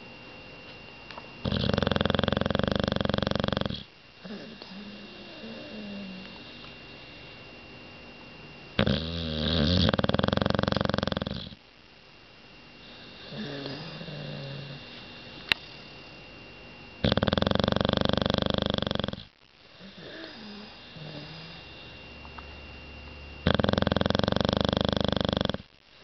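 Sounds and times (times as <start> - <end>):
dog snoring: 1.4 - 7.4, 8.7 - 11.6, 12.8 - 15.9, 17.0 - 22.0, 23.4 - 25.7.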